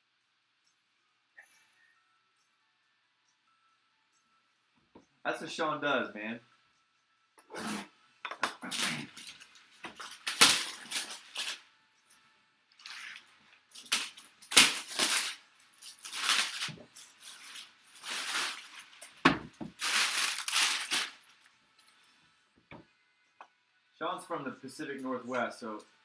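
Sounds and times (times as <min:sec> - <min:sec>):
cardboard tearing and crumpling: 0:07.5 - 0:11.6, 0:12.8 - 0:21.3.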